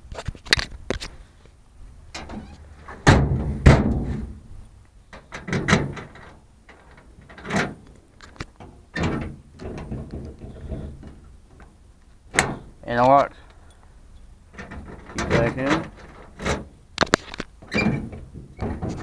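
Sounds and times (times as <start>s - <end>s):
toolbox lid thunks: 3.0s - 4.4s
latch and lock clicks: 12.3s - 12.6s.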